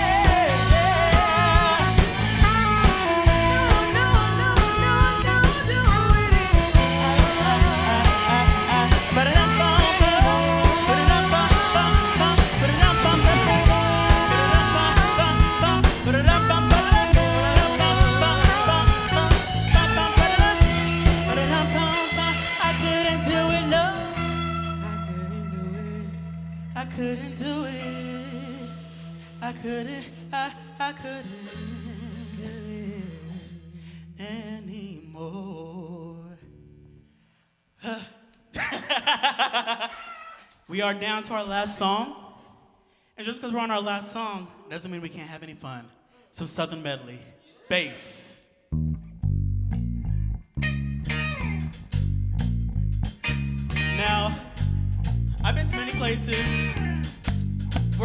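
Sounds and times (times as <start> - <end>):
drum kit: 0.0 - 25.2, 51.1 - 58.0
live band playing: 0.0 - 26.4, 53.0 - 58.0
person singing: 0.0 - 36.4, 53.8 - 54.8, 55.4 - 57.1.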